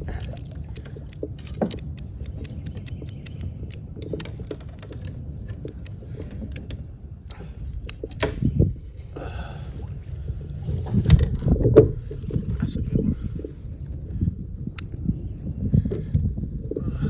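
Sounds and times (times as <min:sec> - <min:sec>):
fishing gear clicking and rattling: 0:00.0 - 0:09.2, 0:09.8 - 0:13.6.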